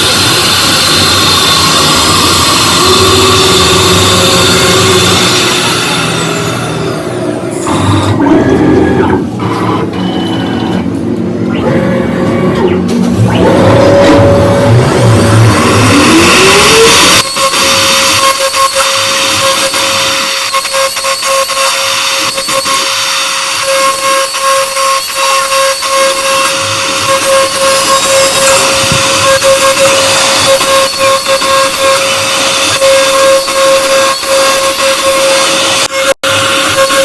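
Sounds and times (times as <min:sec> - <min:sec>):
router spindle whining: 0:00.0 - 0:08.2, 0:09.0 - 0:37.0.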